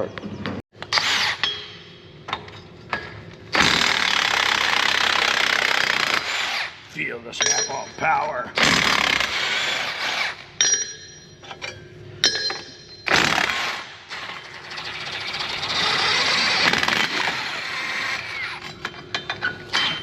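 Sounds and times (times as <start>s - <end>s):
impact wrench hammering: 10.6s - 11.3s, 12.2s - 14.5s.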